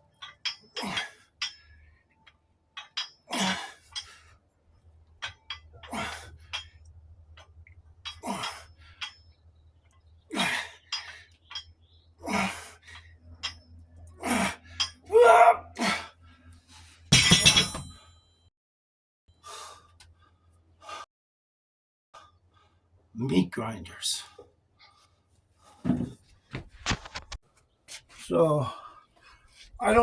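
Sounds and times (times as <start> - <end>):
metallic clink: 0.1 - 4.2, 13.4 - 13.8, 17.1 - 18.2
man breathing hard: 19.4 - 21.1.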